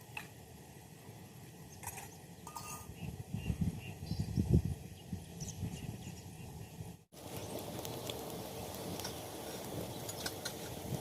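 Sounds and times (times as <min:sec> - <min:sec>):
pot bubbling: 0:07.1 - 0:11.0
steady hiss: 0:07.2 - 0:11.0.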